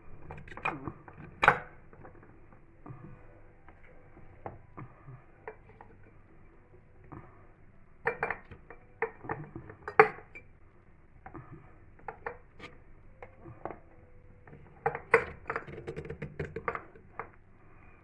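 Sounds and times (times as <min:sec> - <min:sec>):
cucumbers knocking against glass jars: 0:14.8 - 0:17.0.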